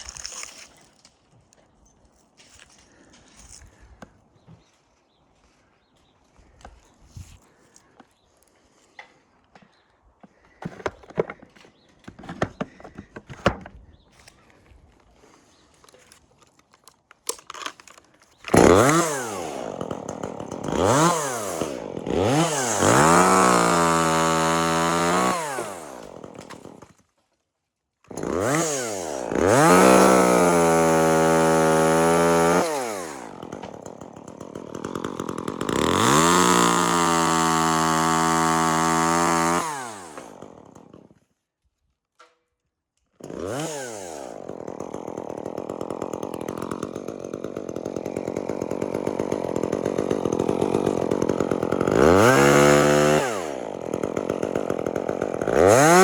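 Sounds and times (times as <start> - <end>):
chainsaw revving: 17.6 - 27.0, 28.1 - 41.2, 43.2 - 56.0.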